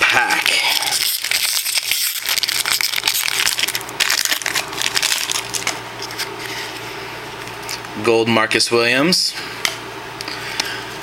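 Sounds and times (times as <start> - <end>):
card pack wrapper crinkling: 0.0 - 6.6.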